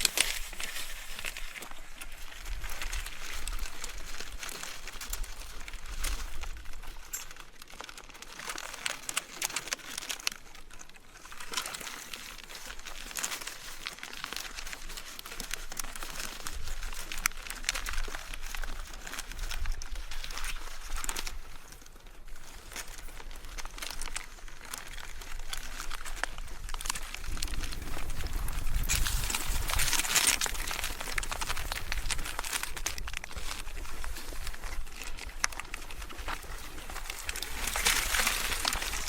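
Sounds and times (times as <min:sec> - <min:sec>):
bike clicks and rattles: 0:00.0 - 0:39.0
bike tyres crunching over trail: 0:00.0 - 0:39.0.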